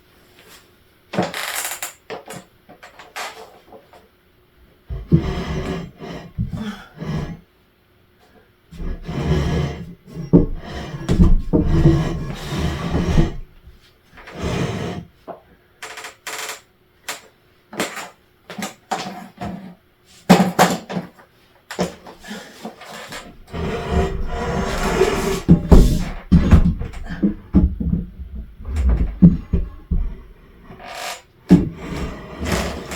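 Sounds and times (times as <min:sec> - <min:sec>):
ceiling tiles clattering and scraping: 0:01.2 - 0:04.1, 0:08.7 - 0:13.5, 0:14.2 - 0:32.9.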